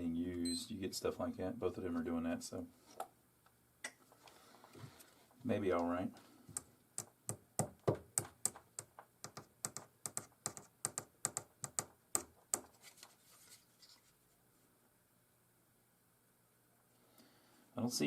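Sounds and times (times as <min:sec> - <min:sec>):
rapid light clicks and taps: 0:05.8 - 0:12.7.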